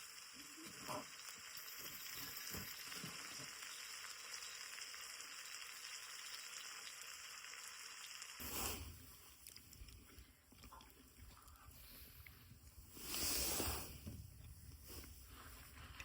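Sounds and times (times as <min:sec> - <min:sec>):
food sizzling in a pan: 0:00.0 - 0:09.4.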